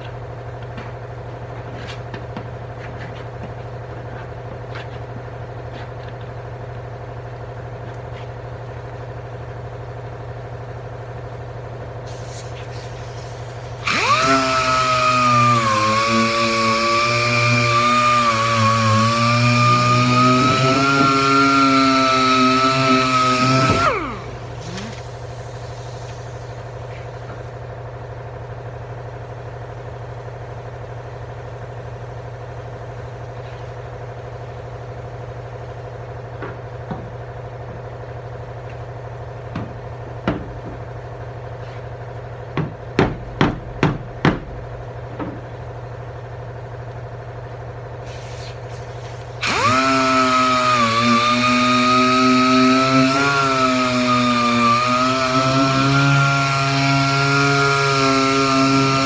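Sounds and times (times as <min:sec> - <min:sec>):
power tool whining: 0:12.1 - 0:27.6, 0:48.1 - 0:59.0
sharp knocks: 0:39.5 - 0:41.0, 0:42.6 - 0:45.6.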